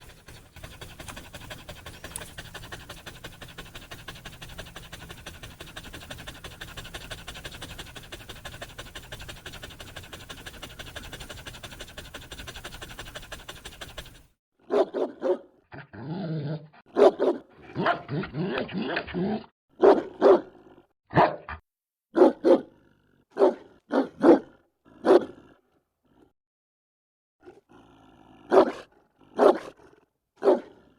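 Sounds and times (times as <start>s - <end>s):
dog panting: 0.0s - 14.4s
dog barking: 14.6s - 15.6s, 16.9s - 19.0s, 19.8s - 22.7s, 23.3s - 25.4s, 28.4s - 30.9s.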